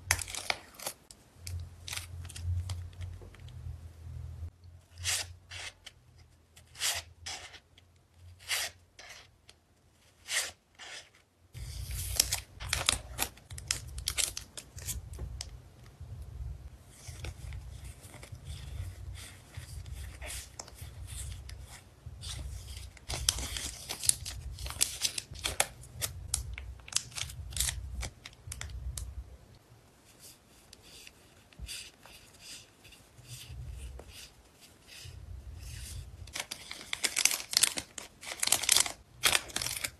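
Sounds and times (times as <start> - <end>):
plastic and paper crackles: 11.0 - 15.5, 16.9 - 29.1, 35.6 - 39.9
rustling and tearing: 35.6 - 39.9.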